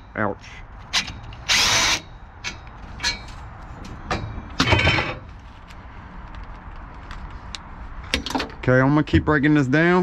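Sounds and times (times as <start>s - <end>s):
metal clatter: 2.4s - 5.3s.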